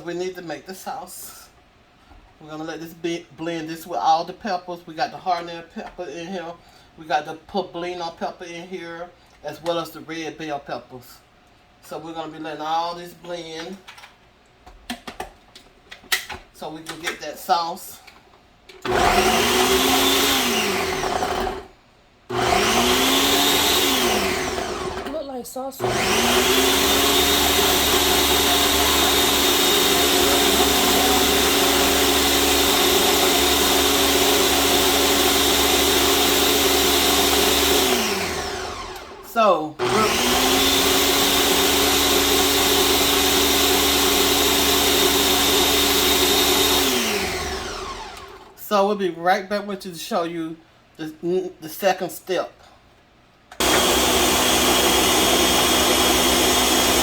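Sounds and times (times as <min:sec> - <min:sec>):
blender running: 0:18.8 - 0:21.7, 0:22.3 - 0:25.2, 0:25.8 - 0:48.6, 0:53.6 - 0:57.0.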